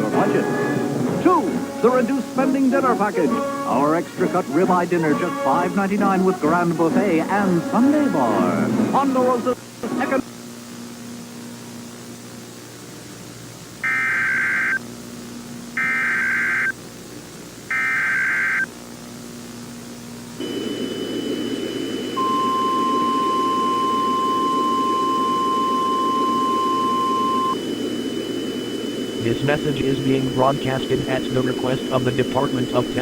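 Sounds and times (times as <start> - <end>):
long steady attention tone: 0.0 - 10.2, 13.8 - 14.9, 15.6 - 16.9, 17.7 - 18.8, 20.4 - 33.0
hiss with high steady whine: 0.0 - 33.0
warbling digital data tones: 13.8 - 14.8, 15.8 - 16.8, 17.7 - 18.7, 20.4 - 33.0.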